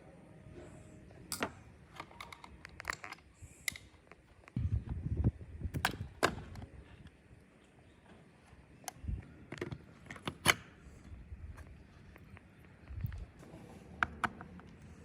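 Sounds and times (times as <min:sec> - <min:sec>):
small hard parts clicking: 0:01.3 - 0:04.6.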